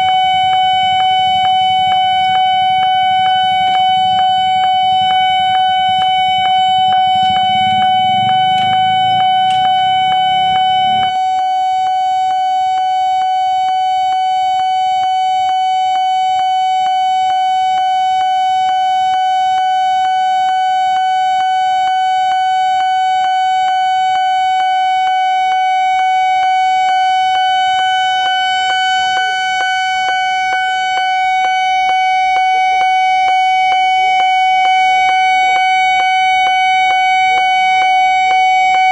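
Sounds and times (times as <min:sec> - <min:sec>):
level-crossing alarm tone: 0:00.0 - 0:38.9
low rumble: 0:01.2 - 0:11.1.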